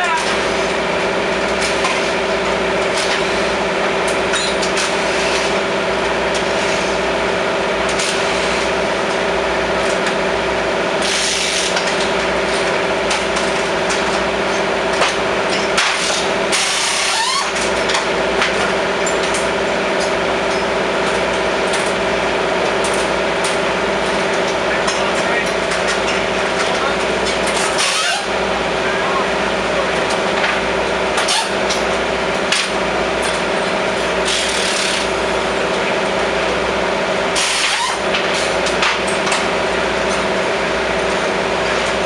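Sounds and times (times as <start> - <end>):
steady mechanical hum: 0.0 - 42.0
clicks and clanks: 22.7 - 28.2.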